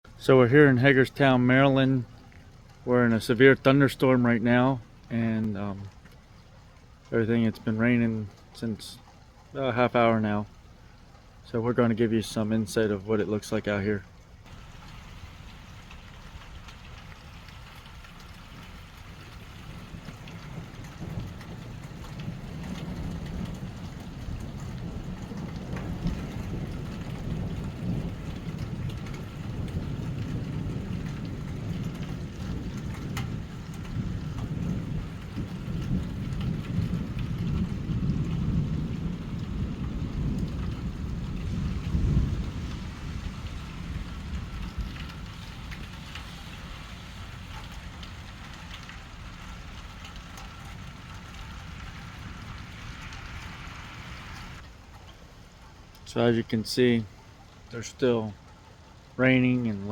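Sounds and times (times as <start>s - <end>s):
heavy rain falling: 0.1s - 59.9s
deep rumble of thunder: 14.4s - 54.7s.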